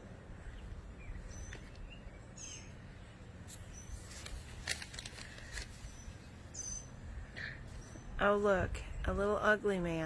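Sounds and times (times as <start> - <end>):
low steady rumble: 0.0 - 10.0
faint high bird chirps: 0.4 - 4.2, 5.8 - 8.2
short clicks and crackles: 3.5 - 5.8.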